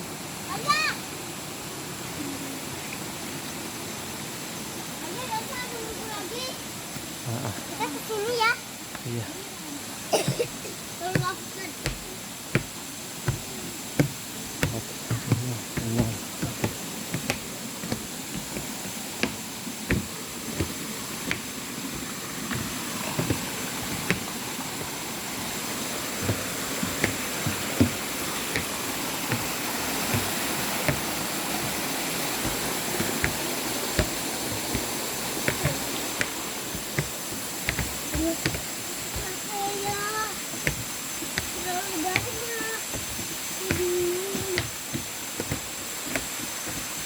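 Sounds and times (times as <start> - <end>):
waterfall rushing: 0.0 - 47.0
short knocks and clicks: 11.1 - 24.3, 26.2 - 31.8, 32.4 - 39.3, 40.6 - 47.0.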